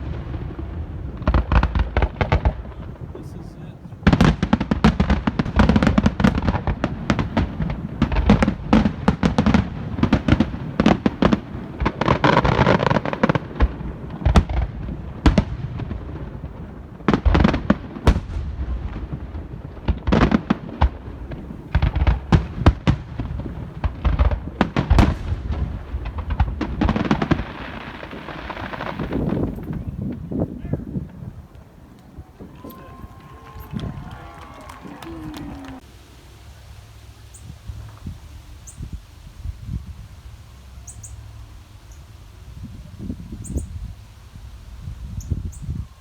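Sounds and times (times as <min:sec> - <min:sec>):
fireworks bangs and pops: 0:00.0 - 0:35.9
fireworks crackling: 0:00.0 - 0:46.0.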